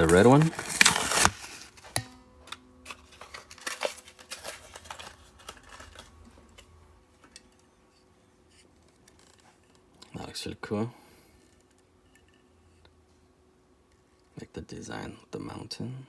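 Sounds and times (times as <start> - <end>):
toy car and packaging handled: 0.0 - 7.5.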